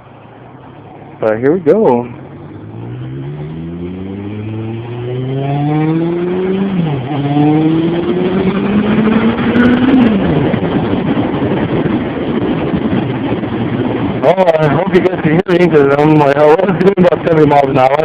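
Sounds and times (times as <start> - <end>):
wind noise: 0.0 - 18.0
motorcycle engine accelerating: 0.4 - 18.0.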